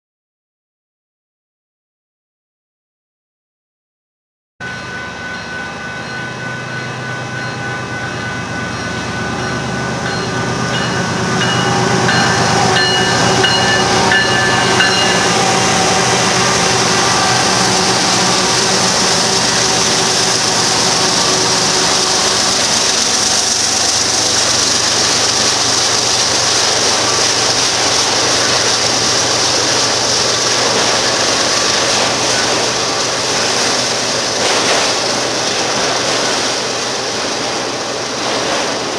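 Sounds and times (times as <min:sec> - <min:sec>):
steady ringing tones: 0:04.6 - 0:34.3
freight train rolling past: 0:04.6 - 0:38.9.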